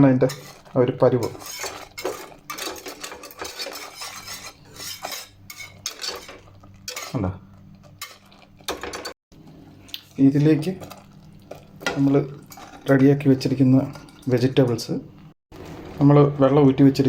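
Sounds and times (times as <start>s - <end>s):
spoon scraping a pan: 0.0s - 9.2s, 10.6s - 14.5s.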